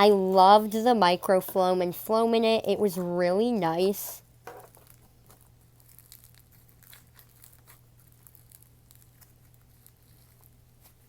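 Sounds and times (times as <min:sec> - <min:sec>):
slime crunching and crackling: 0:04.7 - 0:11.0.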